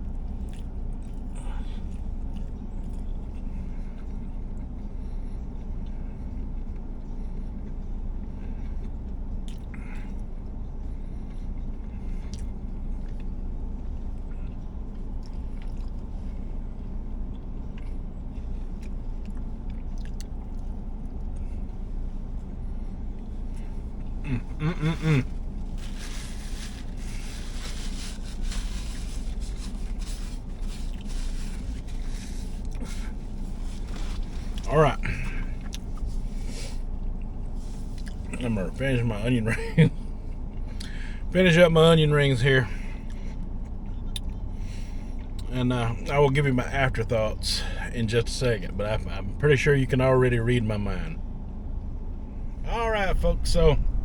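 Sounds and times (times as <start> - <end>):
low rumble: 0.0 - 38.8, 51.0 - 54.0
faint chewing: 0.1 - 38.4, 43.0 - 45.5
short vocal sound: 24.2 - 25.3.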